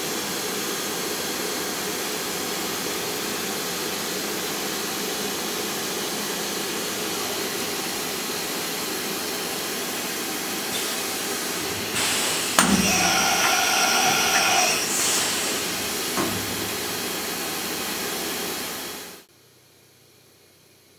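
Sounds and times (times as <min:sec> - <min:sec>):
machine hissing: 0:10.7 - 0:19.2
machine whine: 0:10.7 - 0:19.2.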